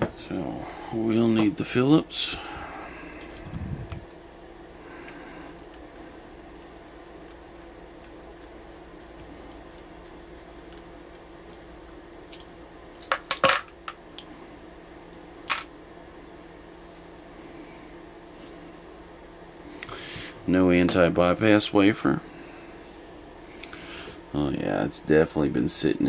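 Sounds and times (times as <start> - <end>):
faint steady hum: 0.0 - 26.0
small metal parts clinking: 12.3 - 14.0.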